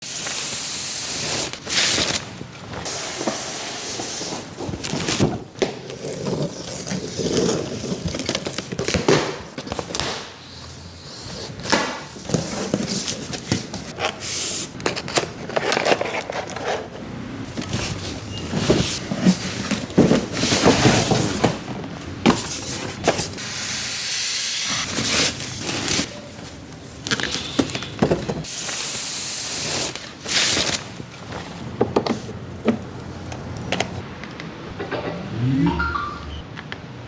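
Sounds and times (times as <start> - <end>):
packaging rustling: 0.1 - 10.3, 17.5 - 23.5, 24.8 - 31.6
box scraping: 1.1 - 10.0, 17.5 - 23.5.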